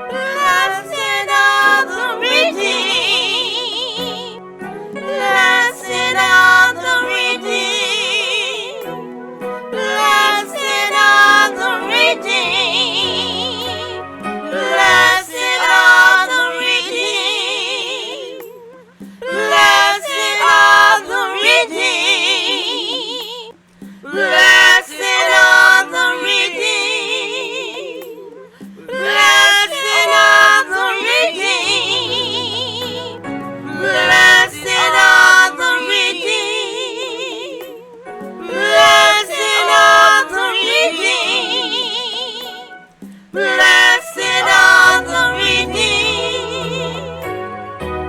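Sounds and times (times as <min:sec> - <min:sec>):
person singing gospel with vibrato: 0:00.0 - 0:47.4
held low accompaniment note: 0:04.4 - 0:08.1, 0:31.5 - 0:35.7.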